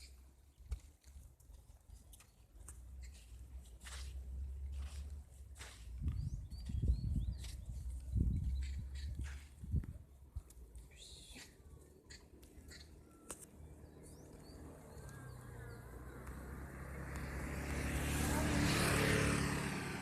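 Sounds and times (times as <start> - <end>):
vehicle passing by: 13.6 - 20.0.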